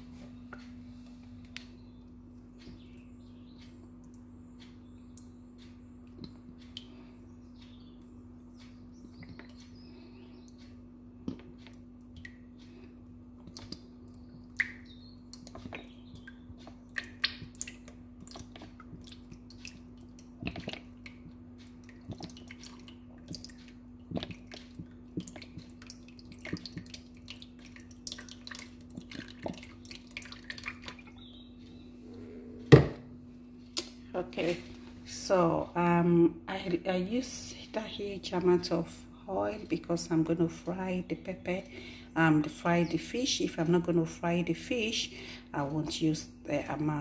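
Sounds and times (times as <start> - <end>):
steady low hum: 0.0 - 47.0
oil popping and crackling: 13.4 - 31.3.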